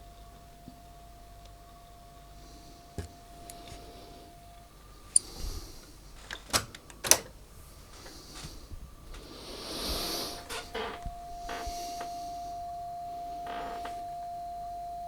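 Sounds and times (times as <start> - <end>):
steady test tone: 9.5 - 15.0.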